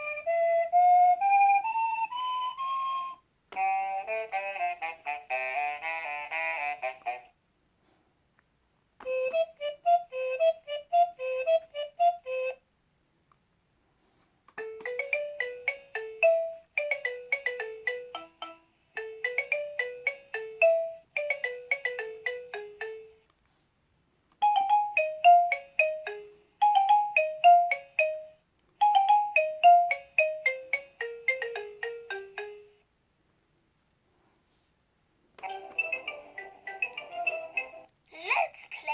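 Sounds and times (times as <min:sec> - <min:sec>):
toy beeping melody: 0:14.6 - 0:23.2, 0:24.4 - 0:32.8, 0:35.5 - 0:37.9.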